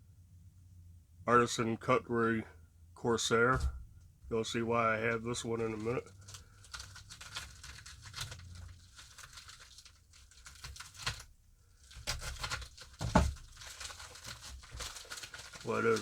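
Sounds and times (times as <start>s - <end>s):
packaging crinkling and tearing: 5.5s - 16.0s.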